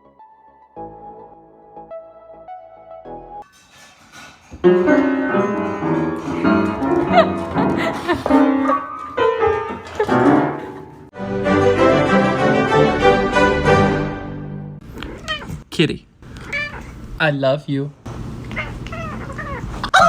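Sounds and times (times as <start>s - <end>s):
piano and bowed strings music: 4.6s - 14.8s.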